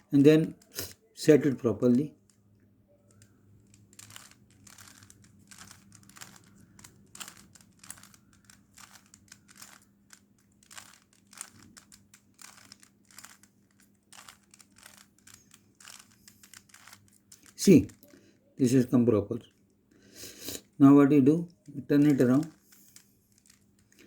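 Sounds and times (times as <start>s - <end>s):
faint steady hum: 0.0s - 24.0s
puzzle cube clicking: 3.1s - 18.1s, 21.4s - 24.0s.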